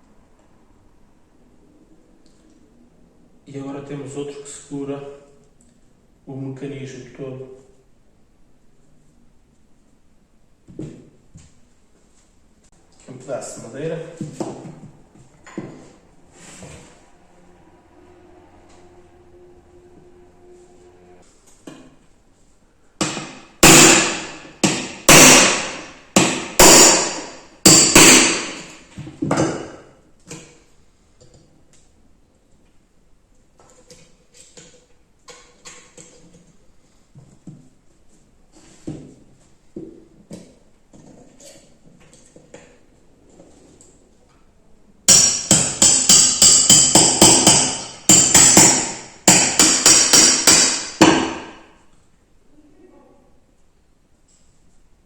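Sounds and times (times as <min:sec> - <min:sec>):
hammer blows on wood block: 0:23.0 - 0:28.7
hammer striking metal pin: 0:23.0 - 0:29.4, 0:45.1 - 0:51.6.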